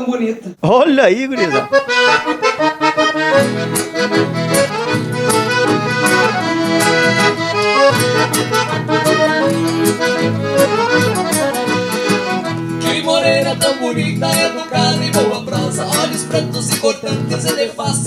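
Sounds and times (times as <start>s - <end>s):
accordion dance tune: 0.0s - 18.0s.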